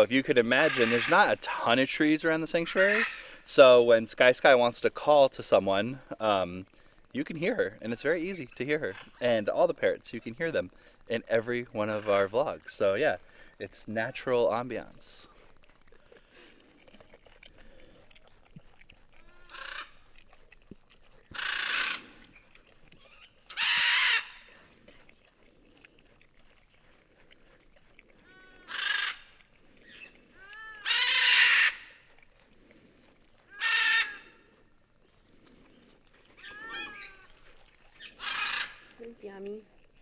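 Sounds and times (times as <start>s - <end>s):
parrots screaming: 0.5s - 1.3s, 2.7s - 3.4s, 19.3s - 19.9s, 21.3s - 22.1s, 23.1s - 24.5s, 28.3s - 29.2s, 30.4s - 32.0s, 33.5s - 34.4s, 36.4s - 37.3s, 38.0s - 38.8s.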